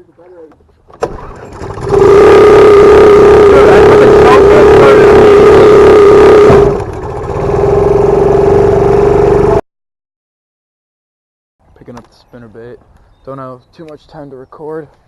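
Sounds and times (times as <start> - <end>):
boat motor running: 1.1 - 9.6.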